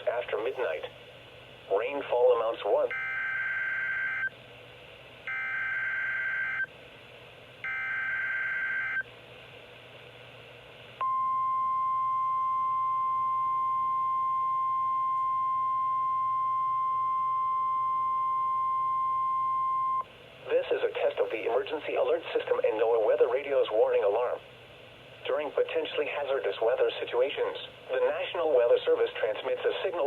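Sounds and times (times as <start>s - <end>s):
steady alarm tone: 2.9s - 4.3s, 5.3s - 6.7s, 7.6s - 9.0s.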